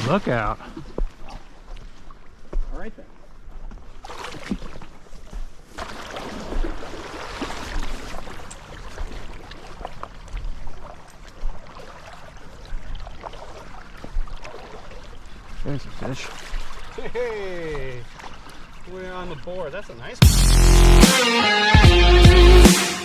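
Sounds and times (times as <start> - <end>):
stream rushing: 5.8 - 8.8.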